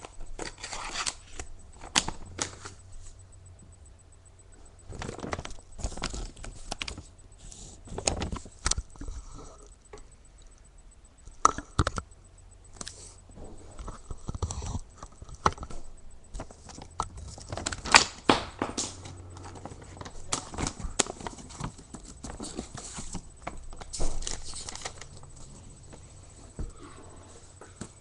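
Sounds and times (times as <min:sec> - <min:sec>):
packaging rustling: 0:04.9 - 0:07.1, 0:15.1 - 0:26.0
plastic parts clicking and tapping: 0:07.9 - 0:10.6, 0:11.2 - 0:12.1, 0:13.8 - 0:26.0.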